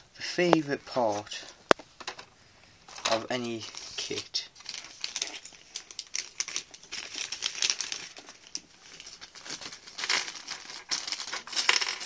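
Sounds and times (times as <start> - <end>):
plastic bag crinkling: 2.9 - 12.0.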